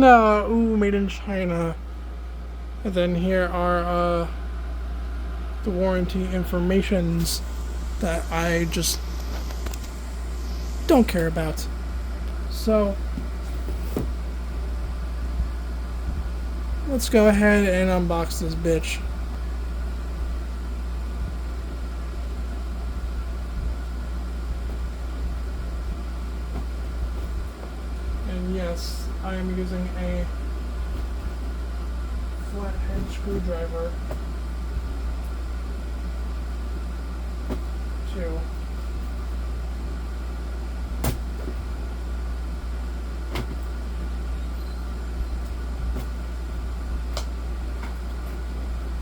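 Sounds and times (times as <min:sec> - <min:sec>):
low machine hum: 0:00.0 - 0:49.0
steady hiss: 0:05.7 - 0:14.5.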